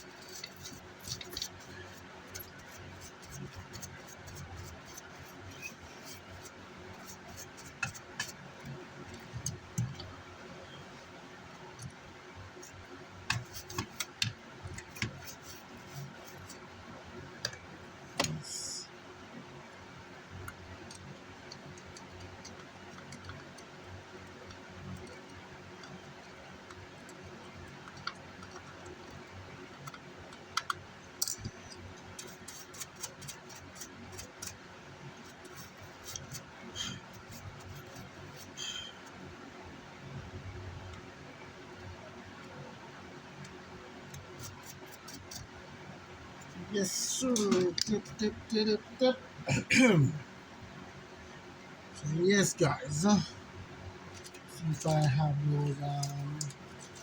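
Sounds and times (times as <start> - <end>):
steady low hum: 0.0 - 57.0
small tools clicking and tapping: 29.8 - 34.6.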